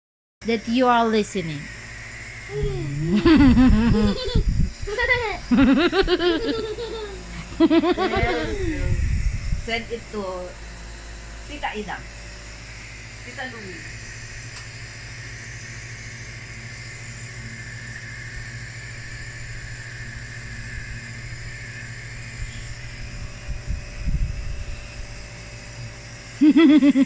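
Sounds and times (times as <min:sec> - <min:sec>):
nebulizer compressor humming: 0:00.4 - 0:27.0
person speaking: 0:02.5 - 0:03.3, 0:07.8 - 0:09.0.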